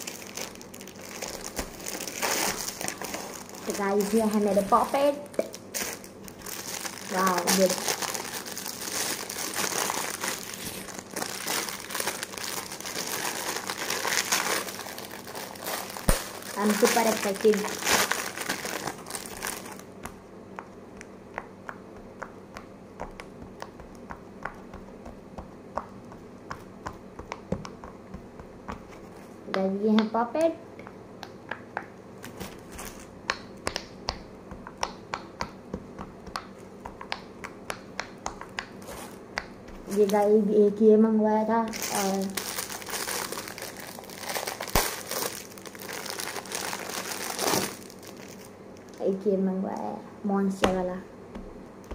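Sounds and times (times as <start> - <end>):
plastic packaging crinkling: 0.0 - 20.0, 32.2 - 33.1, 41.7 - 49.0.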